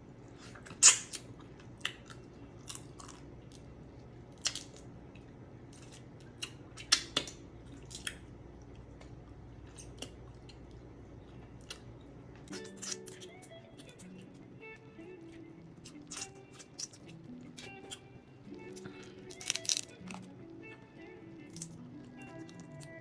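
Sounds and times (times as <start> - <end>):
chewing: 0.3 - 20.5, 21.4 - 23.0
crab shell cracking: 18.6 - 20.4.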